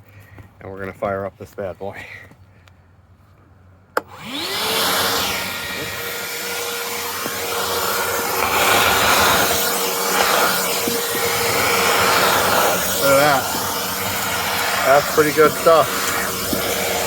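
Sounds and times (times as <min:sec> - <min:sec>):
vacuum motor whining: 0:04.0 - 0:17.0
rushing airflow: 0:04.1 - 0:17.0.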